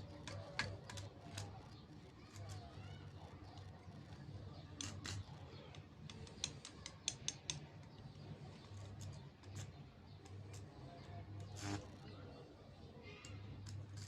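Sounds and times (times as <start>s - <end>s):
sharp clicks and ticks: 4.7s - 11.6s.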